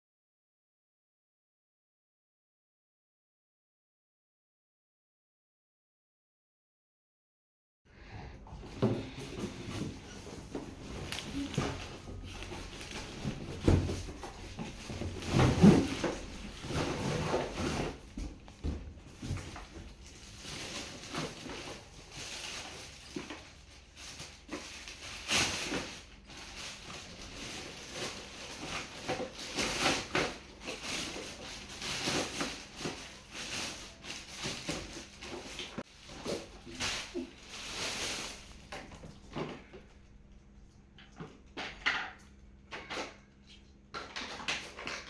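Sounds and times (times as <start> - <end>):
wrapping paper rustling and tearing: 9.0 - 39.7.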